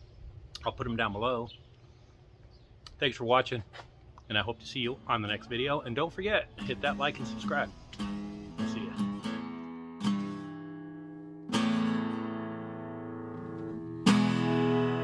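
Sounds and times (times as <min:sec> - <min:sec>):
acoustic guitar chords strummed: 0:04.6 - 0:15.0.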